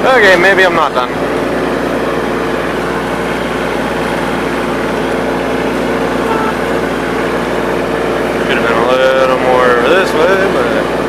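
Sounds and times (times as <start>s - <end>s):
tractor diesel engine running: 0.0s - 11.0s.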